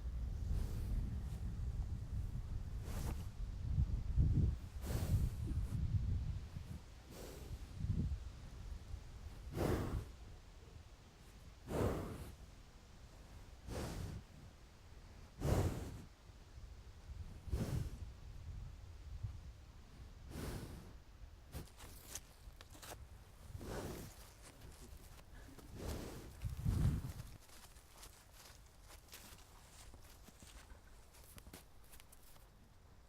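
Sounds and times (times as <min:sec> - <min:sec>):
slow breathing close up: 0:09.3 - 0:10.3, 0:11.6 - 0:12.5, 0:13.6 - 0:14.4, 0:15.2 - 0:16.1, 0:17.4 - 0:18.1, 0:20.2 - 0:21.7, 0:23.5 - 0:27.2.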